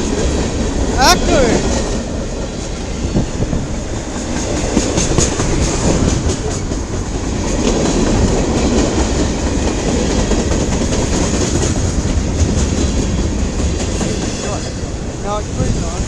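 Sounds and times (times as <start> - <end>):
train wheels rumbling on rail: 0.0 - 16.0
wheels clicking over rail joints: 3.5 - 14.4.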